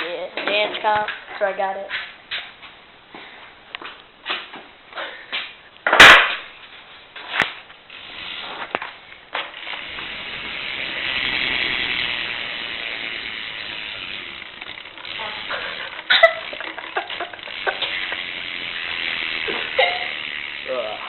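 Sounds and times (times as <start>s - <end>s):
bike hub ratcheting: 7.2s - 21.0s.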